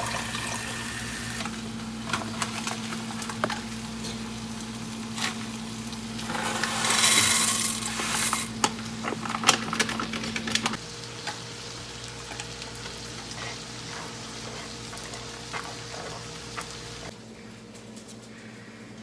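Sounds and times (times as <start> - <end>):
sizzling in a hot pan: 0.0 - 9.9, 10.7 - 17.1
utensil clattering against cookware: 6.2 - 10.8.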